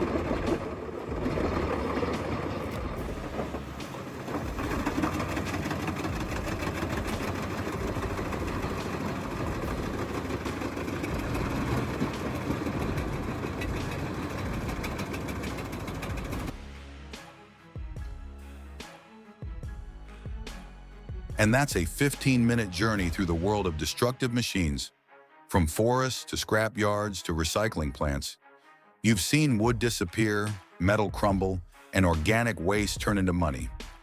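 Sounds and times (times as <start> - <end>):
industrial shredder engine drone: 0.0 - 16.7.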